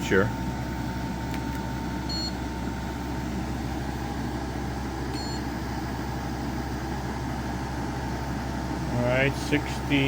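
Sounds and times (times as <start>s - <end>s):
air conditioner hum and fan: 0.0s - 10.0s
short electronic beep: 5.2s - 5.5s.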